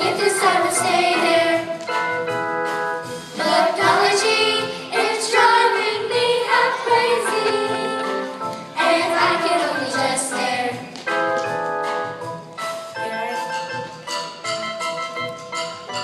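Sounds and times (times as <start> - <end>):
children's choir singing: 0.0 - 2.2, 3.3 - 11.0
musical accompaniment: 0.0 - 16.0.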